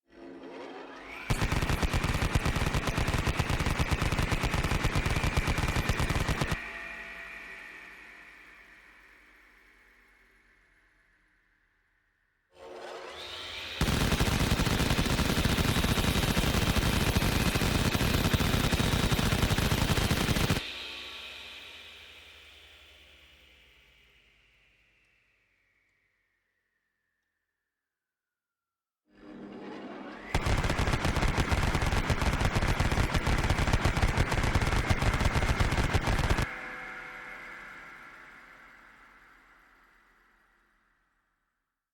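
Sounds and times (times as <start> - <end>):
machine gun firing burst: 1.3 - 6.6, 13.8 - 20.6, 30.4 - 36.5.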